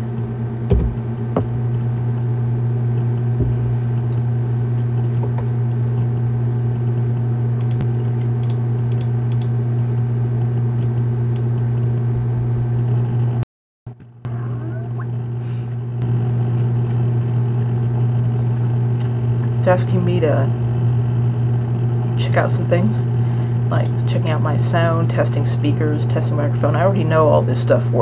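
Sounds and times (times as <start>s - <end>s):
steady low hum: 0.0s - 13.4s, 14.0s - 28.0s
keyboard keystrokes: 7.6s - 9.5s.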